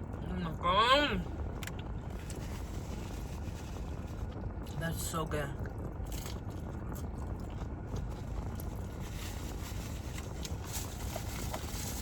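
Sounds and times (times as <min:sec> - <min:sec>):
low car cabin rumble: 0:00.0 - 0:12.0
chewing crunchy chips: 0:05.6 - 0:12.0.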